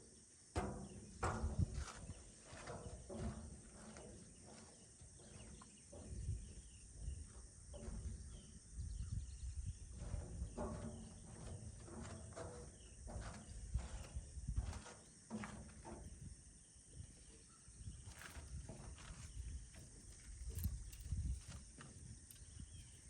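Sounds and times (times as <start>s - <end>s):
low uneven rumble: 1.1s - 23.0s
faint bird chirps: 3.9s - 14.2s, 16.2s - 23.0s.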